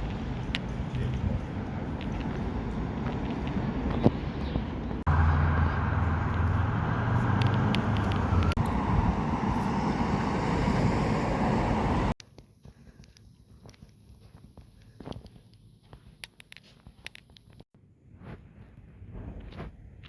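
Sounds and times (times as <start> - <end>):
street traffic: 0.0 - 12.2
low engine hum: 3.5 - 12.2.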